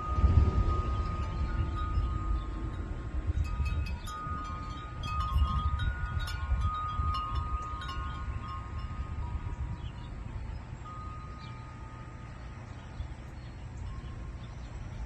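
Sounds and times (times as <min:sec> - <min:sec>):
wind chimes ringing: 0:00.0 - 0:15.0.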